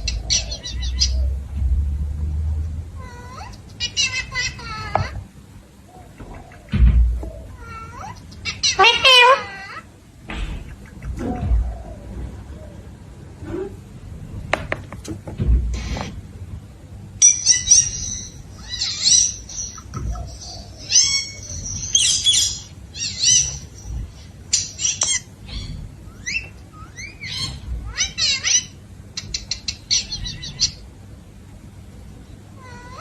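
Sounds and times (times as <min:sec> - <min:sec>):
parrot squawking and whistling: 0:17.2 - 0:30.8.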